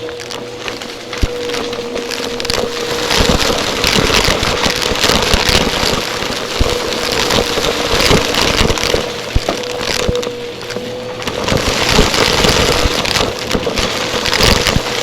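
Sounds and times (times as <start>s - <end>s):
crackling and clattering: 0.0s - 15.0s
vacuum cleaner running: 0.0s - 15.0s.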